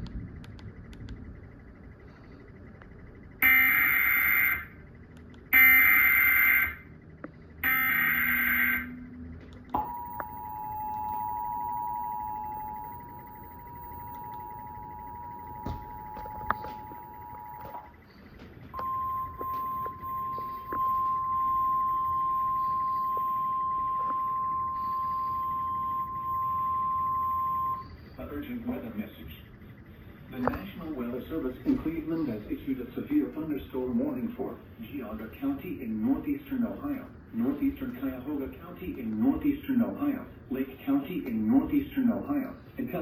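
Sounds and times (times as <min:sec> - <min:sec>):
buzzing digital data tones: 0:00.3 - 0:32.4
long steady beep: 0:00.5 - 0:32.8.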